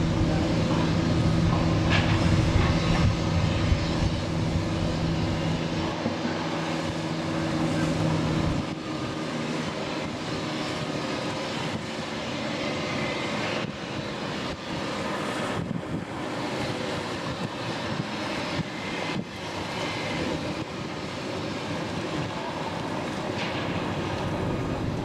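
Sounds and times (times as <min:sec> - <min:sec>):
motorboat engine running: 0:00.0 - 0:08.6, 0:23.1 - 0:25.0
rushing water and wind: 0:00.0 - 0:25.0.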